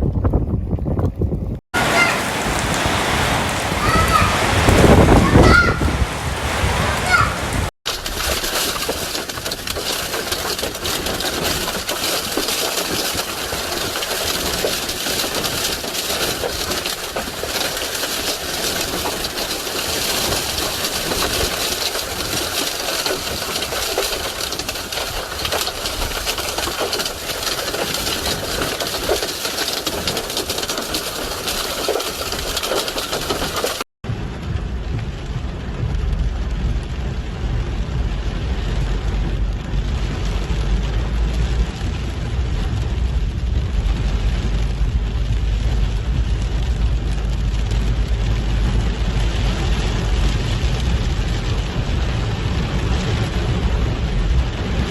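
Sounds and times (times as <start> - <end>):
heavy rain pattering: 0.0 - 54.9
rushing storm water: 1.6 - 54.9
deep low rumble: 34.0 - 54.9.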